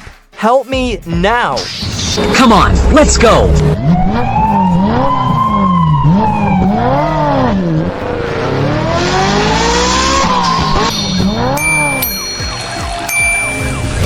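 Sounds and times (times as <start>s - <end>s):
engine noise: 2.0s - 12.3s
cartoon siren wail: 2.2s - 8.2s.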